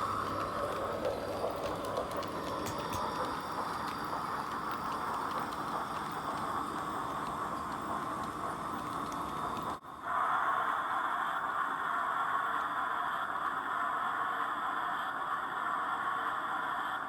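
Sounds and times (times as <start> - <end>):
wheels clicking on rails: 0.0 - 9.8
steam locomotive sound from speaker: 0.0 - 17.0.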